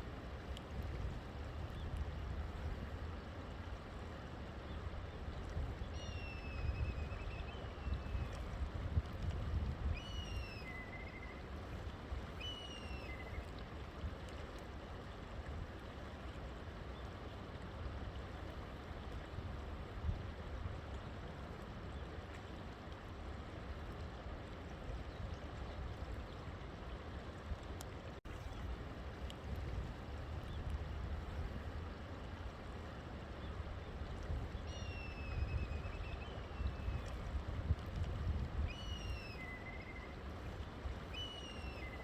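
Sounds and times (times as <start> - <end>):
river flowing with deep rumble: 0.0 - 42.0.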